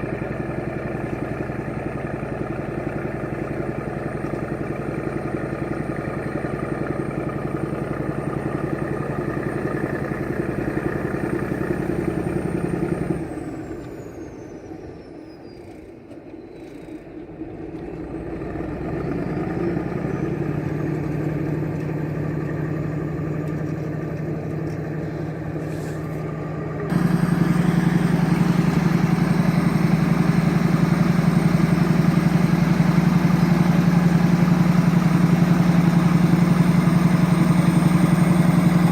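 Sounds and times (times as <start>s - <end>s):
bulldozer engines running: 0.0s - 38.9s.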